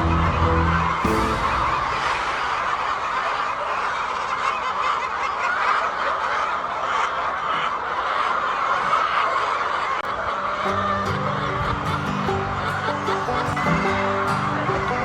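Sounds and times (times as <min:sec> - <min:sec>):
hens clucking: 0:10.1 - 0:15.0.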